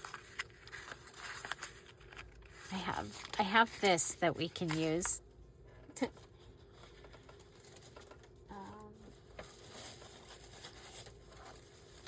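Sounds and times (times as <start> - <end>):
paper rustling and tapping: 0.0 - 5.2.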